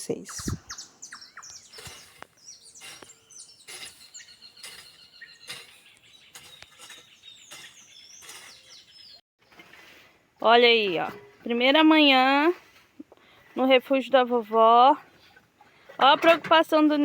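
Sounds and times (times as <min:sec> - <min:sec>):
high bird trill: 0:00.0 - 0:09.2
birds chirping: 0:00.0 - 0:09.6.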